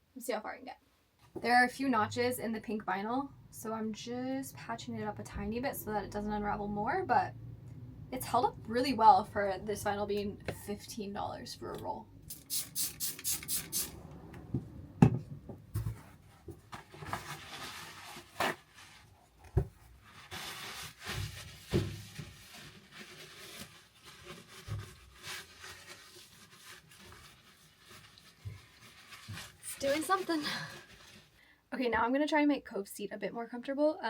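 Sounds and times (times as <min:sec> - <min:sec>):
hands rubbing and scraping vinyl: 0:15.8 - 0:31.3.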